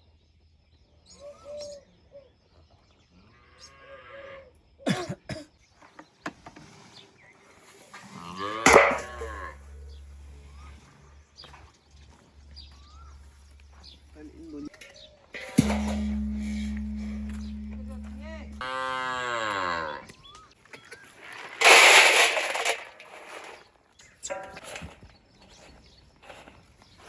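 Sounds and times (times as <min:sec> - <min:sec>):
sharp knocks: 0:15.6 - 0:18.6.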